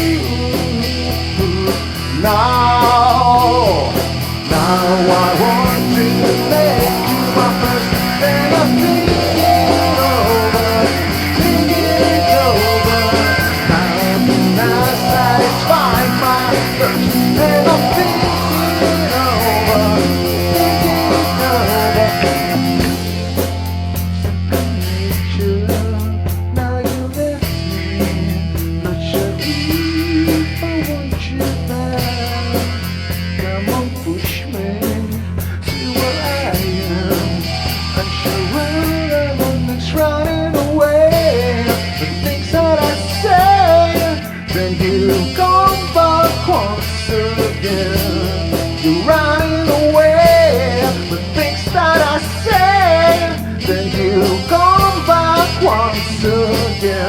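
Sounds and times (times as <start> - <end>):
rock band playing: 0.0 - 57.0
lead guitar bending notes: 2.3 - 24.5.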